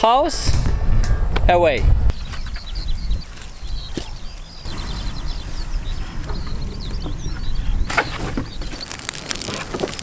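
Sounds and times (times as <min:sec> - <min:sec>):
small birds chirping: 0:02.0 - 0:10.0
steady low rumble: 0:04.6 - 0:08.7.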